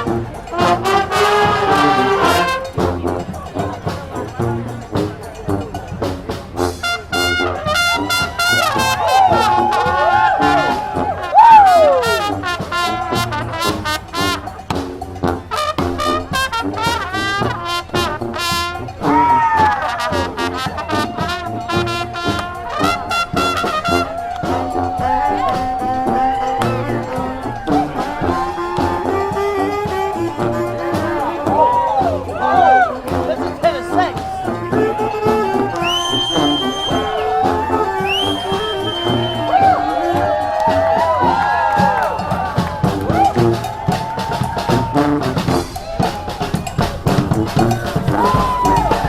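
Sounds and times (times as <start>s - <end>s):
marching drum beat: 0.0s - 49.0s
trumpets and trombones: 0.0s - 49.0s
horn downward slide: 15.8s - 41.5s.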